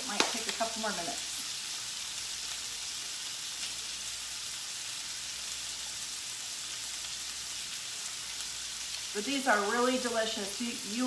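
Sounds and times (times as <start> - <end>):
meat sizzling in a frying pan: 0.0 - 11.0.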